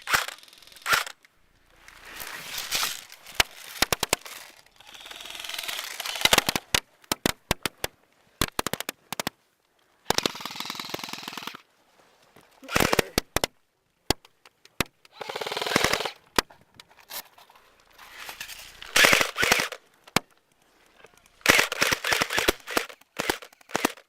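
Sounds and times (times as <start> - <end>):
rattling full-auto burst: 0.0 - 1.2, 15.2 - 16.2, 18.6 - 19.8, 21.4 - 24.0
airsoft gun shots: 15.2 - 16.2, 18.9 - 19.8, 21.4 - 24.0.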